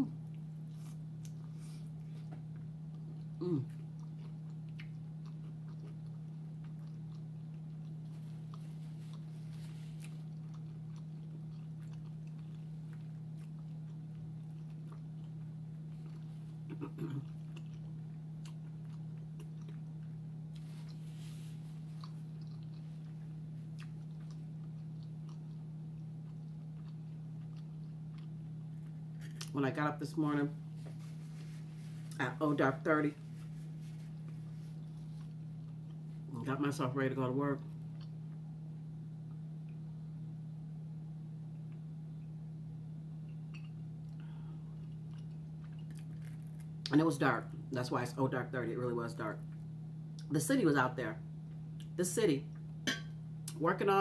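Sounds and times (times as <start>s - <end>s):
steady low hum: 0.0s - 54.0s
quiet chewing and mouth clicks: 0.2s - 29.6s, 33.2s - 36.3s, 37.6s - 38.4s, 39.2s - 39.9s, 43.2s - 47.0s, 51.4s - 52.8s.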